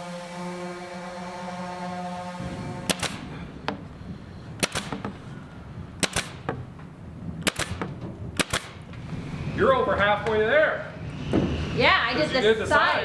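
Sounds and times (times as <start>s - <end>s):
nail gun firing: 2.4s - 9.1s.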